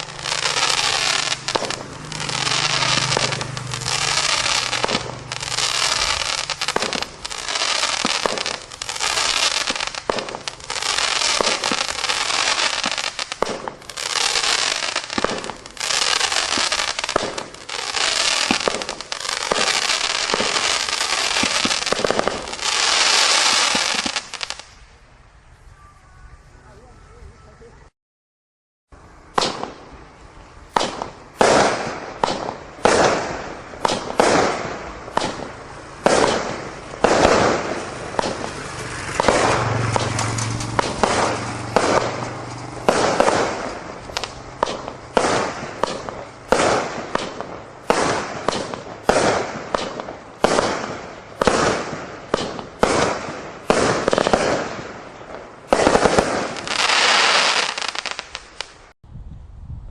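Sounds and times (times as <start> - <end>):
fireworks crackling burst: 0.0 - 25.0, 29.0 - 59.0
fireworks shells banging: 30.7 - 58.3.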